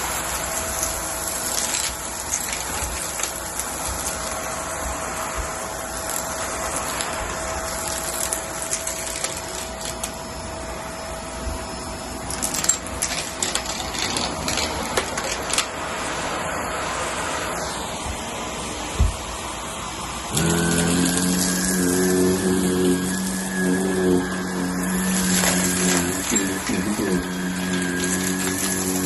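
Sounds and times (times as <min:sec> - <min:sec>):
sharp crackles and clicks: 0:00.0 - 0:04.8, 0:05.4 - 0:10.2, 0:12.3 - 0:15.7, 0:20.4 - 0:29.0
vacuum cleaner running: 0:00.0 - 0:29.0.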